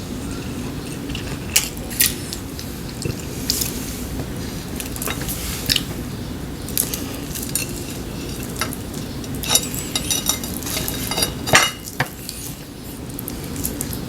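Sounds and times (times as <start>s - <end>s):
steady low hiss: 0.0s - 14.0s
spoons and chopsticks clinking on bowls: 6.7s - 14.0s.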